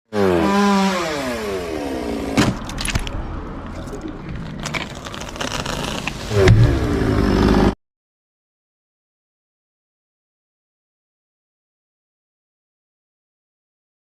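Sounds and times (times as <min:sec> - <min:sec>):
chainsaw engine revving and idling: 0:00.1 - 0:02.4, 0:05.6 - 0:07.8.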